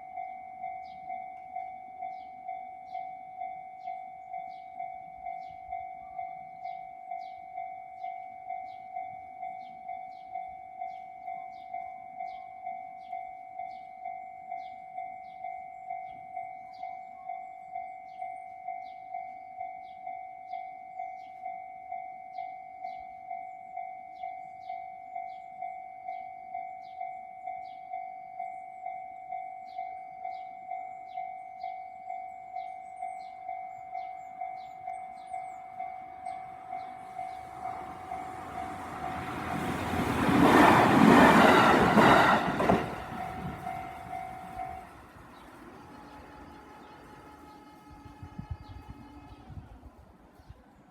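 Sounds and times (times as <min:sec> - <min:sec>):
level-crossing bell ringing: 0:00.0 - 0:45.5.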